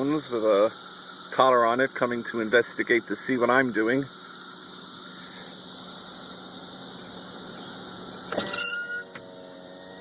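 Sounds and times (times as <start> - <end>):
cicadas droning in chorus: 0.0 - 10.0
short squeaky pitched sound: 8.3 - 9.2.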